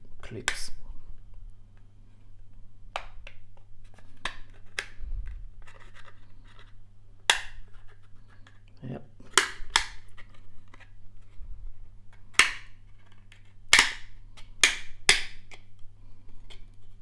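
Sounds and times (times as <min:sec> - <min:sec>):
plastic clips snapping: 0:09.3 - 0:10.0, 0:12.4 - 0:15.6.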